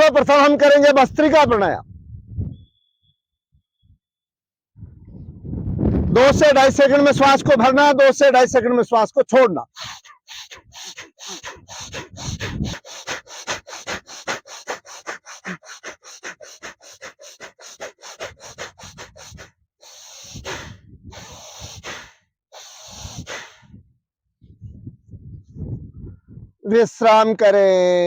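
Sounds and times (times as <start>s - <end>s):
man breathing forcefully through nose: 9.7s - 23.8s.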